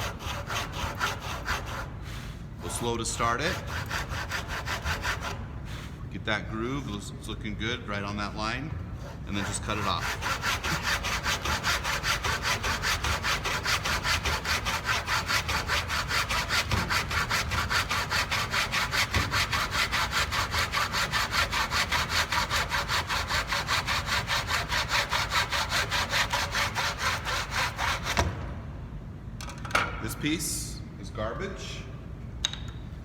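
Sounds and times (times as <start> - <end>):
hand saw cutting wood: 0.0 - 5.4, 9.0 - 28.4.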